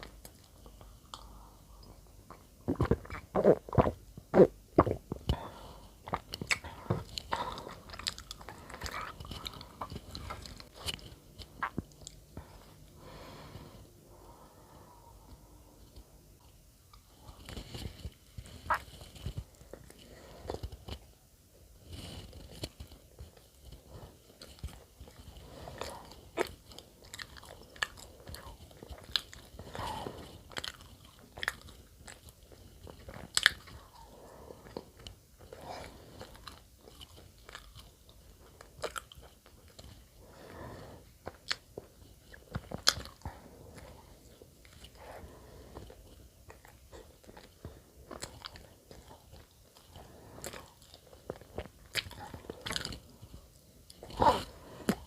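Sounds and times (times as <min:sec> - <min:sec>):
mouth clicks and smacks: 0:00.0 - 0:12.7, 0:16.9 - 0:21.1, 0:41.2 - 0:45.0
person chewing bread: 0:00.0 - 0:55.0.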